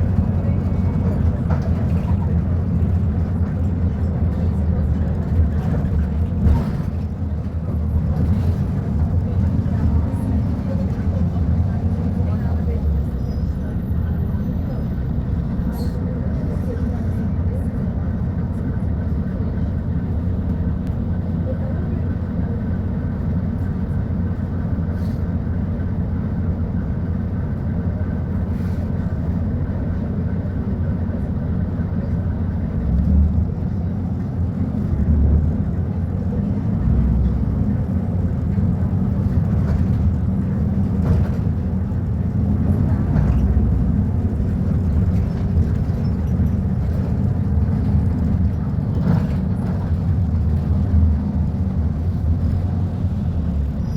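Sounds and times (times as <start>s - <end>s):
bus engine running: 0.0s - 53.9s.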